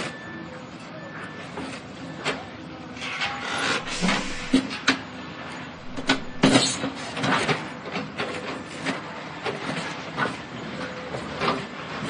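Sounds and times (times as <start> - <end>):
steady machinery rumble: 3.8 - 4.6, 5.2 - 6.6.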